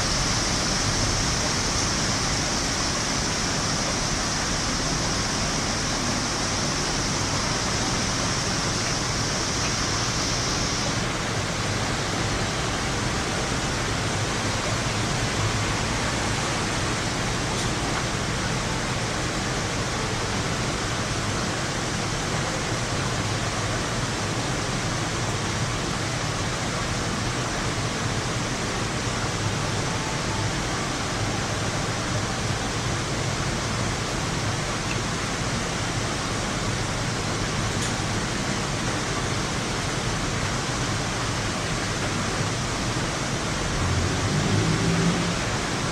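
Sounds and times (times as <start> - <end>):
thin high hiss: 0.0 - 11.6
heavy rain: 0.0 - 45.9.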